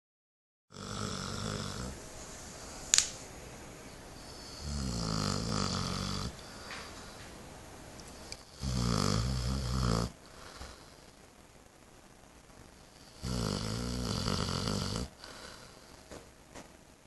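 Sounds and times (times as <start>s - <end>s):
dog snoring: 0.7s - 2.0s, 4.2s - 6.7s, 8.4s - 11.1s, 12.9s - 16.1s.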